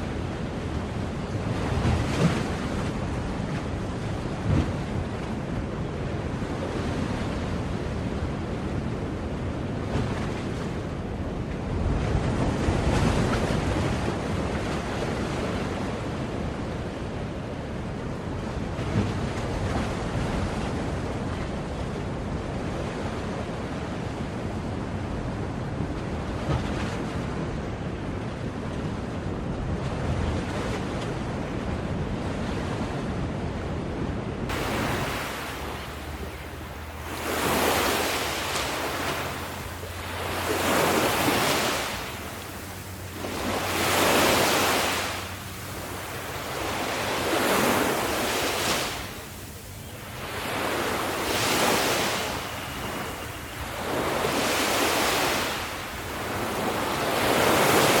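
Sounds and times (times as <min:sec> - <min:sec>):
waves breaking: 0:00.0 - 0:08.6, 0:34.5 - 0:58.0
sea noise: 0:00.0 - 0:58.0.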